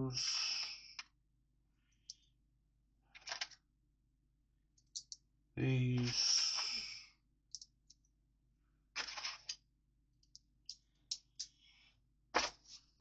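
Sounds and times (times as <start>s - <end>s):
plastic pieces clicking: 3.1s - 3.6s, 4.8s - 5.2s, 7.5s - 8.0s, 9.0s - 9.6s
rattle of plastic pieces: 3.1s - 3.6s, 9.0s - 9.6s.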